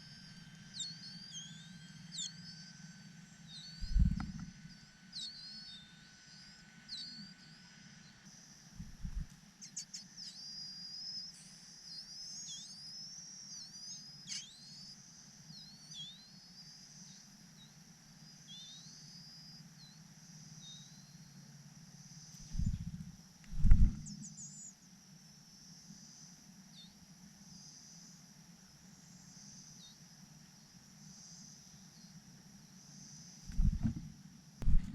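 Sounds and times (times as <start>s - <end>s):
small birds chirping: 3.5s - 8.2s, 8.8s - 21.4s, 22.2s - 24.9s, 28.8s - 34.9s.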